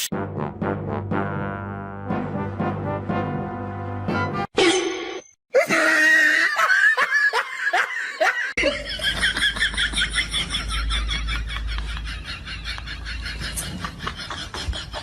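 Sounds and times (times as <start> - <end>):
people laughing: 5.7 - 15.0.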